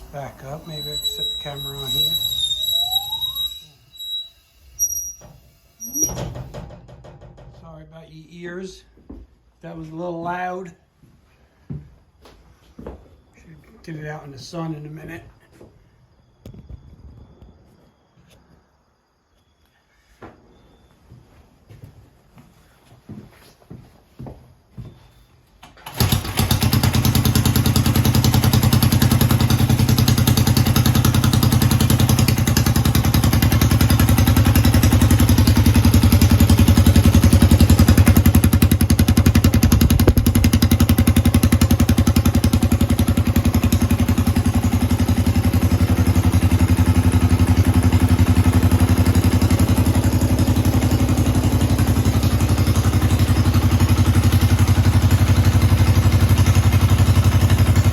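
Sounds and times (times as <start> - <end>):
small engine starting and running: 0.0 - 7.0, 25.6 - 57.9.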